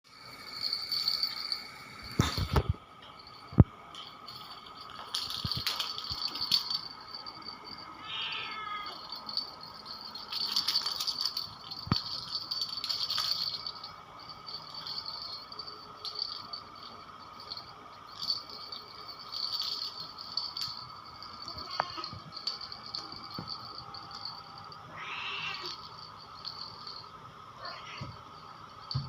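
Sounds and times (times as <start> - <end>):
toy ball rattling: 0.2 - 29.0.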